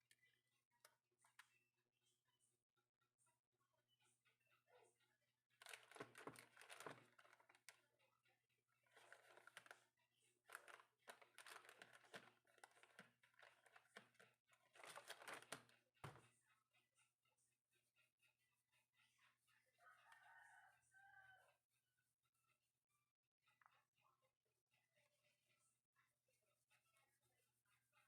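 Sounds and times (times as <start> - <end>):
faint crinkling and rustling: 5.6 - 7.8, 8.8 - 16.3.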